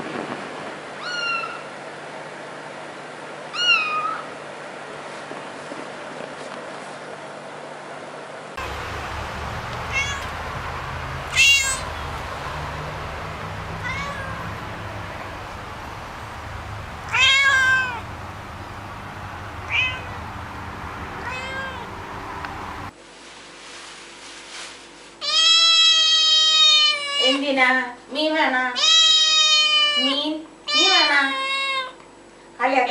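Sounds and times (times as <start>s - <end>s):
cat meowing: 1.0s - 1.7s, 3.5s - 4.3s, 9.5s - 20.4s, 21.1s - 22.5s, 25.2s - 27.4s, 28.8s - 30.1s, 30.7s - 32.0s
background hum: 8.6s - 22.9s.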